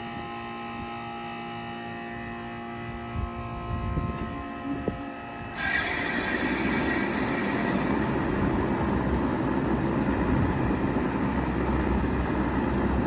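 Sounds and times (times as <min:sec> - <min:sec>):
compressor hum: 0:00.0 - 0:13.0
loud rushing hiss: 0:05.5 - 0:10.8.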